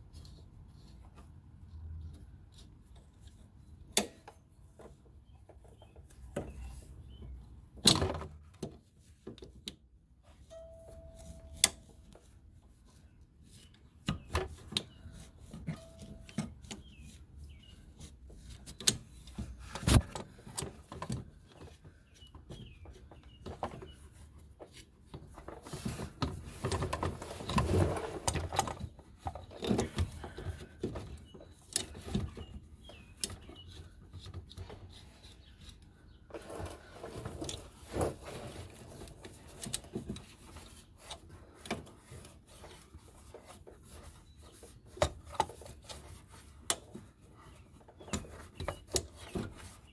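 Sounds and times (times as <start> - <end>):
rubbing and scraping: 33.5 - 49.9.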